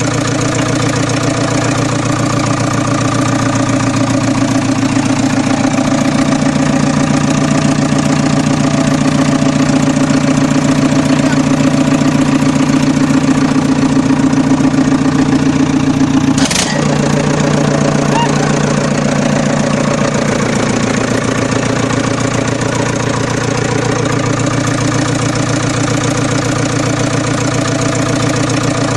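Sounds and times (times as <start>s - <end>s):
diesel engine running: 0.0s - 28.9s.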